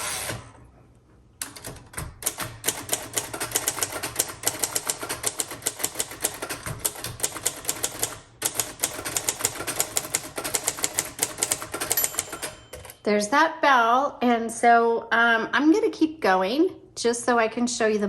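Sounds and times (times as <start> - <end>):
typewriter key strikes: 1.4 - 13.0
typewriter margin bell ringing: 11.2 - 13.0.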